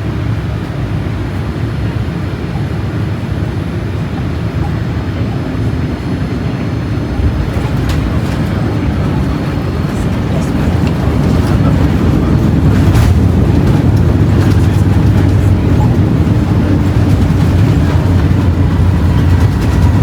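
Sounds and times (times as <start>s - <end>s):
airplane engine and airflow rumble: 0.0s - 20.0s
faint rattles: 7.2s - 20.0s.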